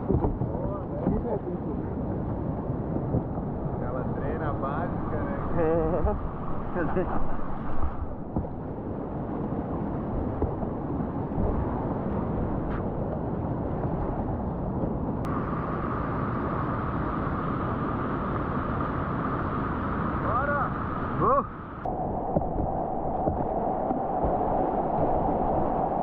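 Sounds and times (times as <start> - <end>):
river water rushing: 15.3 - 26.0.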